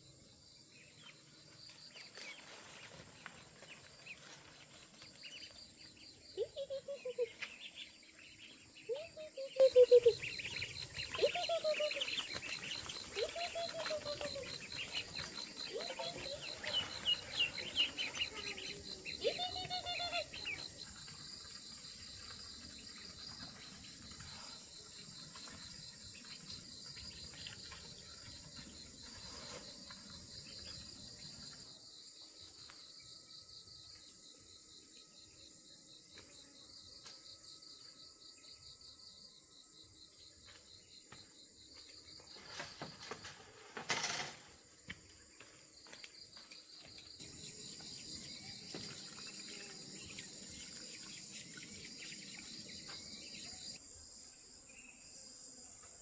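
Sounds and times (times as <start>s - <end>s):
crickets chirping: 3.5s - 56.0s
birds calling: 5.0s - 31.6s.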